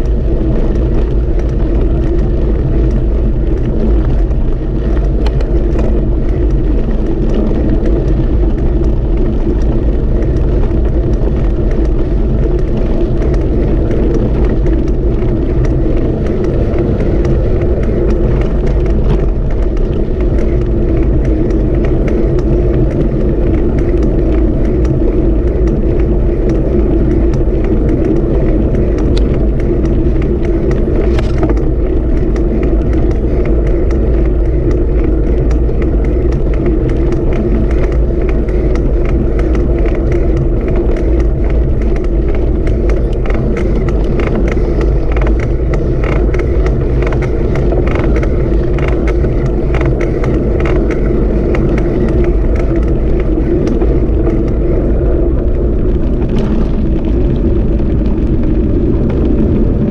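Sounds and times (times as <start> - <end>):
small clicks and rattles: 0.0 - 59.9
vehicle low rumble: 0.0 - 59.9.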